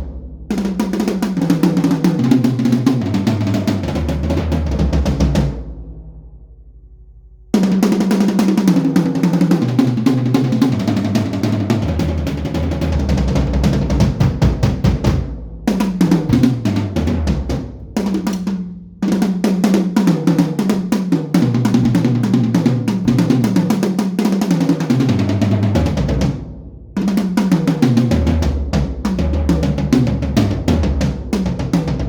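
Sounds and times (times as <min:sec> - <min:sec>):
drum kit tom rolls: 0:00.0 - 0:06.2, 0:07.6 - 0:32.0.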